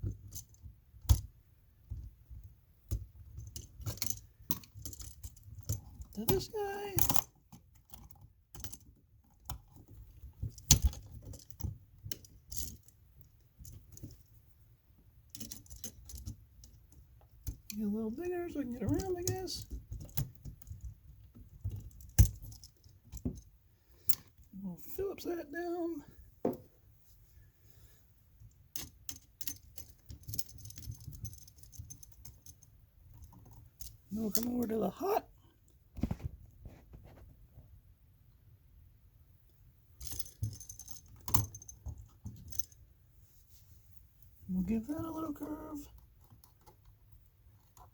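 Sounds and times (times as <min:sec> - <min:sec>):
small metallic clicks and rattles: 0:00.0 - 0:24.5, 0:28.4 - 0:34.9, 0:39.9 - 0:42.9, 0:44.6 - 0:47.9.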